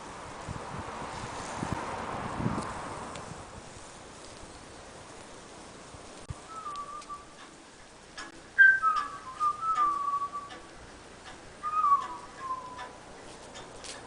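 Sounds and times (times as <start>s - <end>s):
faint clicks: 6.2s - 14.0s
whistling sliding downward: 6.3s - 7.4s, 8.6s - 10.7s, 11.6s - 12.9s.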